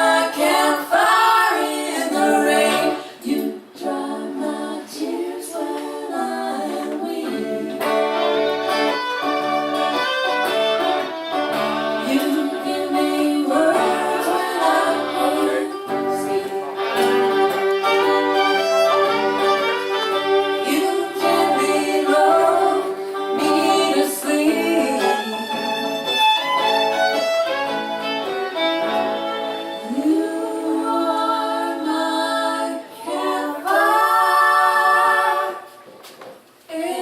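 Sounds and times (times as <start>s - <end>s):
rhythmic folk accompaniment: 0.0s - 31.6s
fiddle melody: 7.6s - 31.0s.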